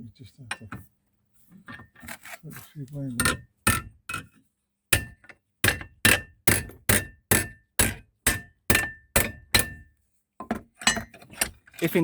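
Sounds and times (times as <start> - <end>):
hammer striking metal hinge: 3.2 - 4.3, 5.0 - 9.8.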